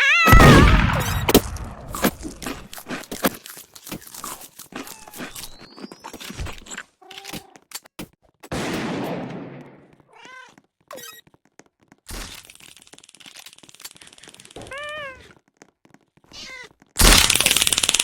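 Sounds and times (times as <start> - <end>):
cat meowing: 0.0 - 0.6, 10.1 - 10.6, 14.6 - 15.4, 16.3 - 16.7.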